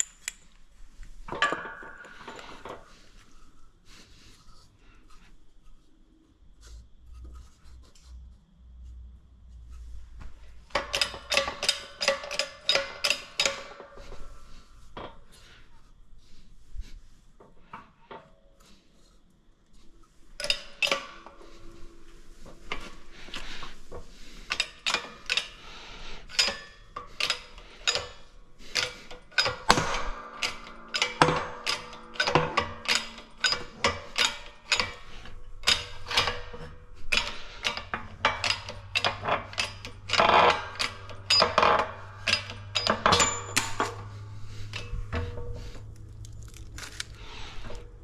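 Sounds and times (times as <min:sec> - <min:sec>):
hammer striking metal: 0:42.2 - 0:44.1.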